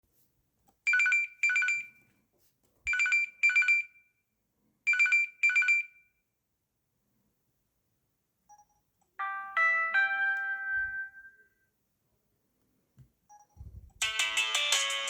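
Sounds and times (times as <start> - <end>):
phone ringtone trilling: 9.2 - 11.4.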